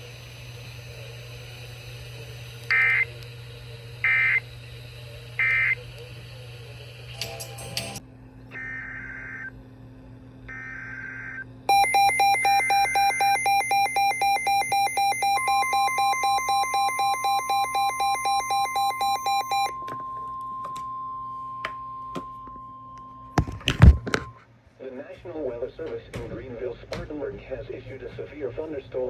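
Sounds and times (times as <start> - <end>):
steady warning alarm tone: 0.5 - 3.2, 3.9 - 4.8, 5.4 - 6.5, 10.5 - 23.5
alarm beeping rapidly: 11.7 - 19.9.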